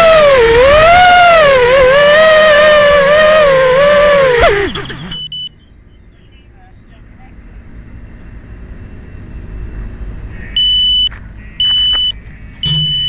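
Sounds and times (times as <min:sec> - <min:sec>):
low rumble: 0:00.0 - 0:13.0
high-pitched electronic beeps: 0:04.6 - 0:05.6, 0:10.4 - 0:13.0.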